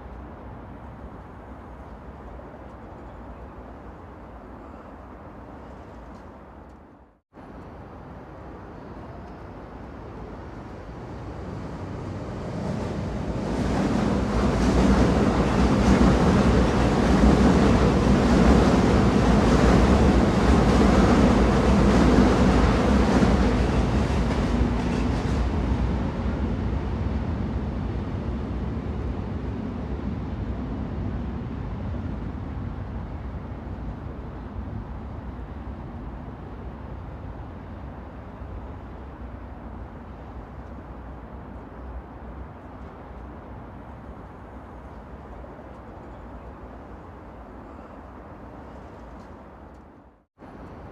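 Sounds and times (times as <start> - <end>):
train rumbling on rails: 0.0 - 50.9.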